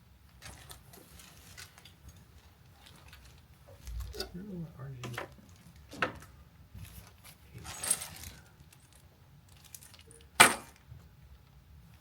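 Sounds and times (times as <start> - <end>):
scraping rustle: 6.8 - 9.0.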